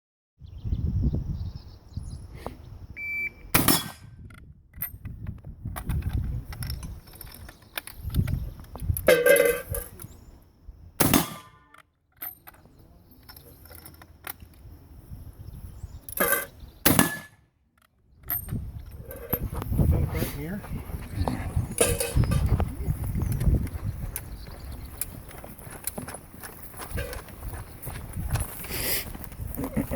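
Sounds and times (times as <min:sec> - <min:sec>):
gunshots: 0:03.6 - 0:04.1, 0:11.0 - 0:11.6, 0:16.8 - 0:17.4.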